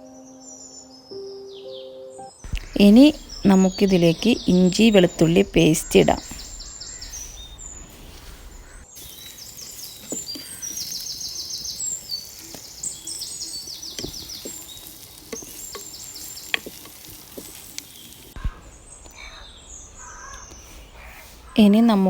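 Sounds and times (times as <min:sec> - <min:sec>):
birds chirping: 0:00.0 - 0:22.0
onions sizzling in oil: 0:02.5 - 0:22.0
spoon knocking against pan: 0:13.9 - 0:17.6.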